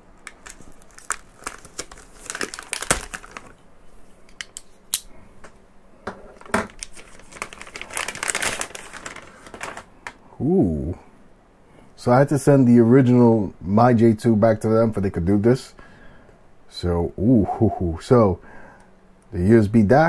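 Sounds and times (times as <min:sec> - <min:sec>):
packaging crinkling: 0:00.0 - 0:03.6, 0:06.4 - 0:10.2.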